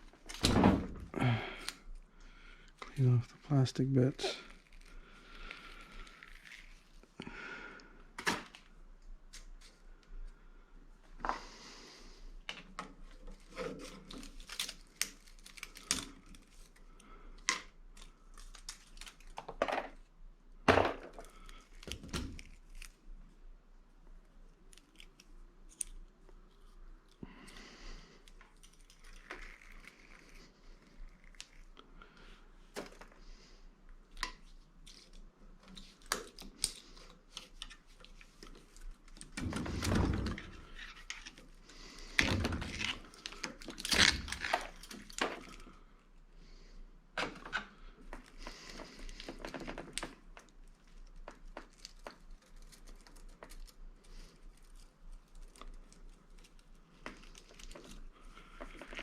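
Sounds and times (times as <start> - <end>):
plastic crinkling: 13.0 - 17.2, 34.1 - 45.8, 47.8 - 59.0.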